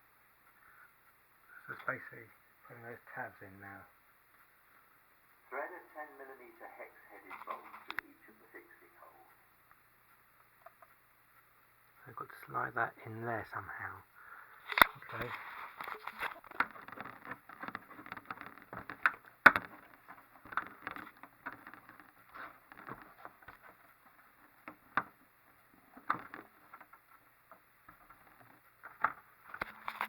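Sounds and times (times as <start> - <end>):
parts scraping and rustling: 14.6 - 30.0
sharp clicks and knocks: 14.7 - 30.0.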